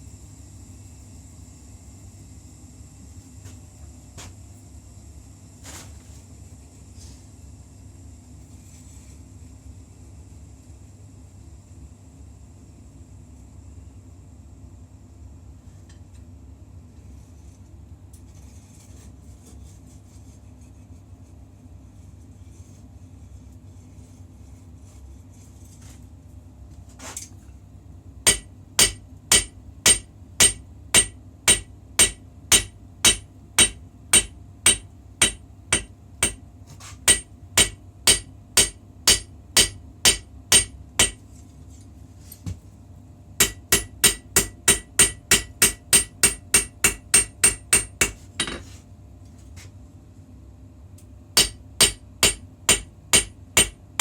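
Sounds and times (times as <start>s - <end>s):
low steady hum: 0.0s - 54.0s
hammer blows on anvil: 28.3s - 36.4s, 37.1s - 41.2s, 43.4s - 48.6s, 51.4s - 53.8s.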